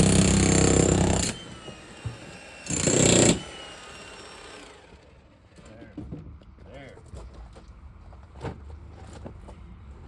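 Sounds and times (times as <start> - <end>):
jackhammer breaking concrete: 0.0 - 1.8, 2.6 - 3.6.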